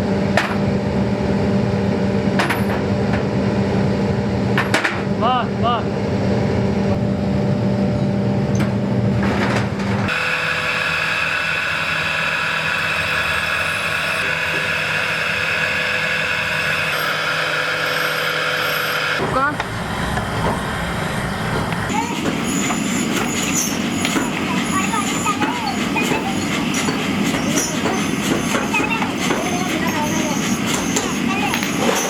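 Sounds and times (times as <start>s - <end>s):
machine whine: 0.0s - 32.0s
workshop machinery humming: 0.0s - 32.0s.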